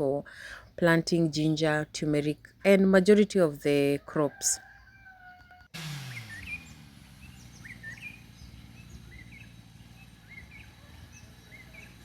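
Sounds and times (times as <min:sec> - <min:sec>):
birds chirping: 0:06.0 - 0:12.0.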